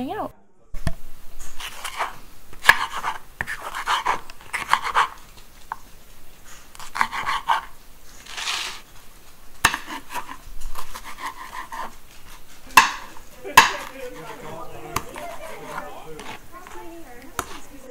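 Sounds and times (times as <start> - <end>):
knife chopping on a board: 1.6 - 5.2, 6.8 - 7.7, 9.6 - 17.6.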